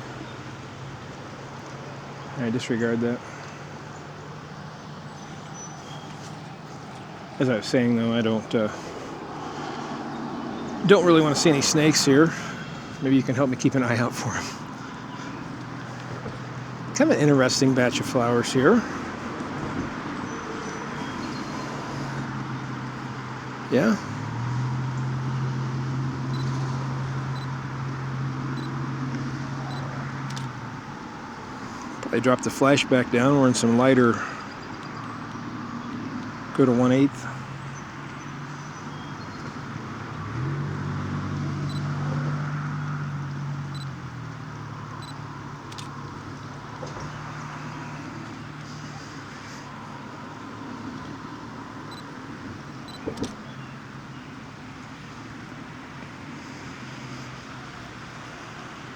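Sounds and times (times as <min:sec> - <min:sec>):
low outdoor rumble: 0:00.0 - 0:24.3.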